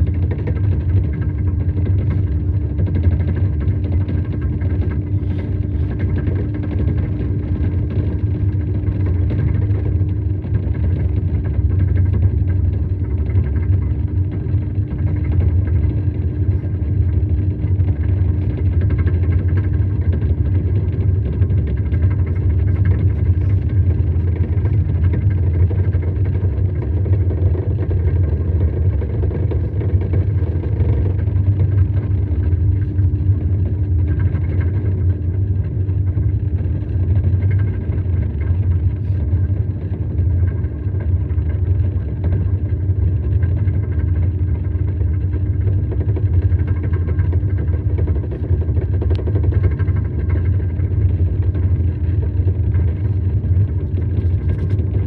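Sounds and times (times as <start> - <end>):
machine running with low rumble: 0.0 - 55.0.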